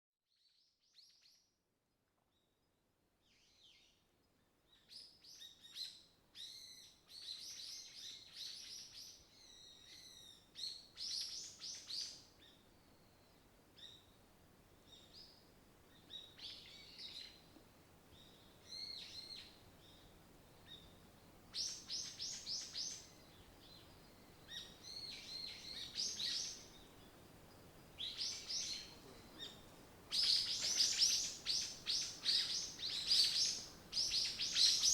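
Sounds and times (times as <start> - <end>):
songbirds chirping and trilling: 18.1 - 34.9.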